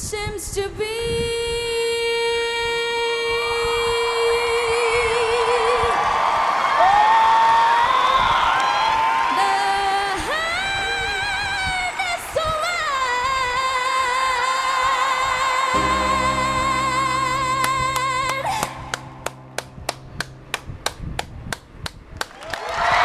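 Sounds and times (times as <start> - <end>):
woman singing a ballad: 0.0 - 6.0, 9.3 - 19.4
piano chords: 15.8 - 22.1
hand claps: 17.6 - 22.8.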